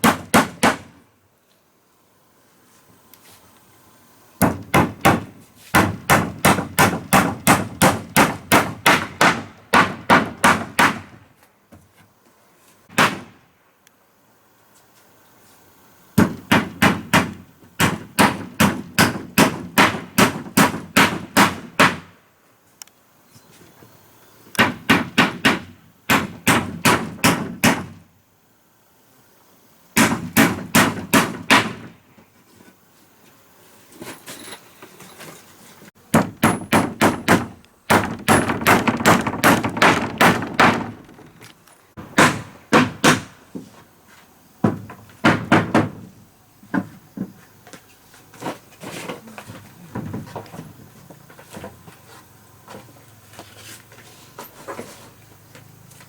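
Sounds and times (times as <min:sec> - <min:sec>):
hammer blows: 0:36.1 - 0:41.5.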